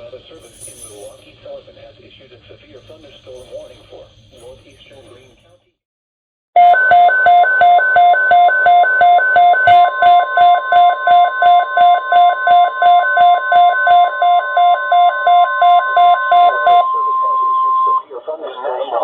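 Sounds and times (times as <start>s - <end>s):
steady high alarm tone: 6.6s - 18.0s
receiver alarm beeps: 6.6s - 18.1s.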